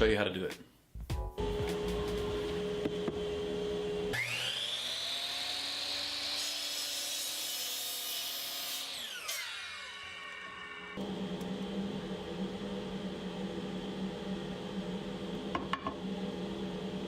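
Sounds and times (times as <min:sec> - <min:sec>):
electric power saw cutting board: 0:02.2 - 0:11.6.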